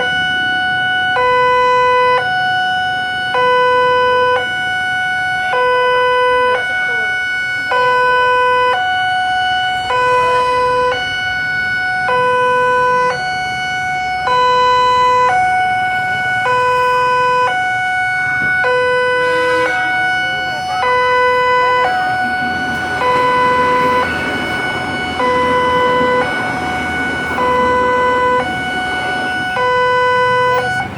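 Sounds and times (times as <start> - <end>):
two-tone hi-lo siren: 0.0 - 30.9
broad rushing noise: 15.2 - 30.9.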